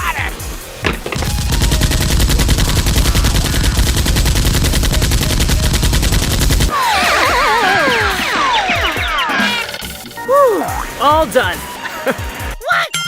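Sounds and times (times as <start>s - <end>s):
rapid automatic gunfire: 1.2s - 9.2s
wavering whistle-like tones: 6.7s - 11.0s.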